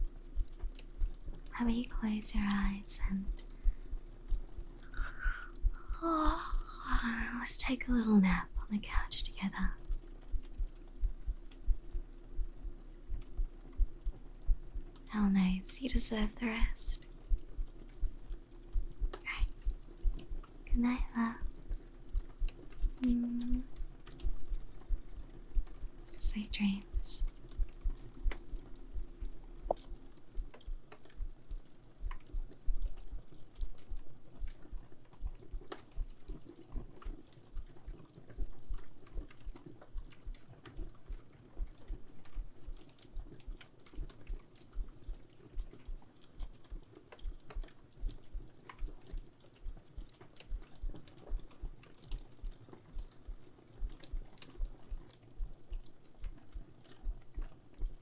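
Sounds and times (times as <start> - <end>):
heartbeat thumps: 0.0 - 36.3
fireplace crackling: 0.0 - 58.0.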